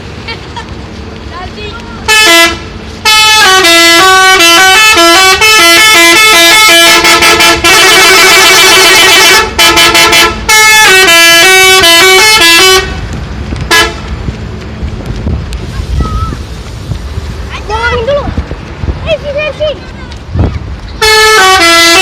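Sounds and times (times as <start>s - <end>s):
musical bus horn melody: 2.1s - 13.1s, 13.7s - 14.1s, 21.0s - 22.0s.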